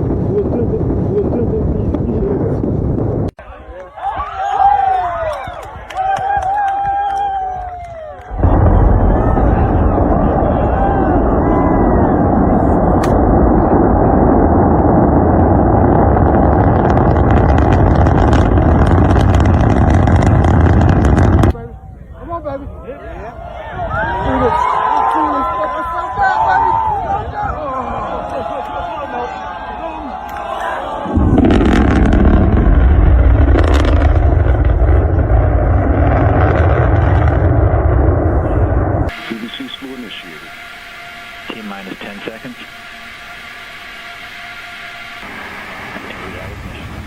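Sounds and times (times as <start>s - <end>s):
rocket exhaust roar: 0.0s - 3.4s, 4.7s - 21.6s, 23.2s - 47.0s
sharp crackling: 8.2s - 21.6s, 31.0s - 47.0s.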